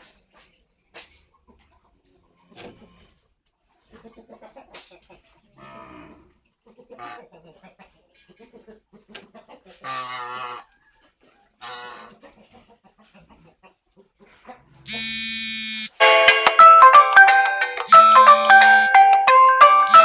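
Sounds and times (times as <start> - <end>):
chicken clucking: 0.0 - 14.8, 17.3 - 20.0
farmyard animal calls: 0.0 - 15.9, 19.6 - 20.0
mobile phone ringtone: 14.9 - 20.0.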